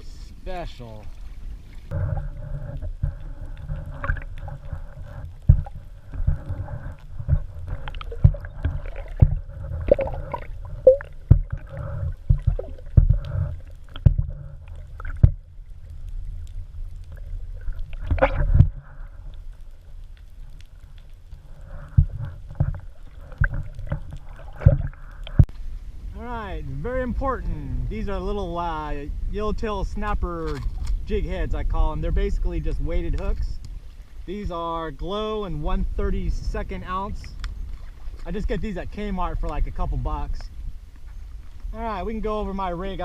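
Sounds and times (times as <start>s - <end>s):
water sloshing around hull: 0.8s - 26.1s, 36.5s - 43.0s.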